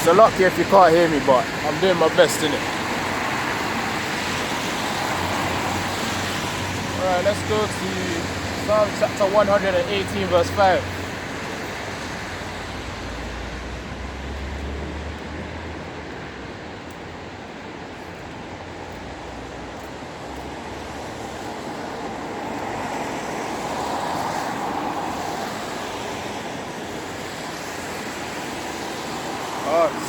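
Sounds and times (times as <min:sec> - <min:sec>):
vehicle passing: 0:00.0 - 0:15.7
street traffic noise: 0:00.0 - 0:30.0.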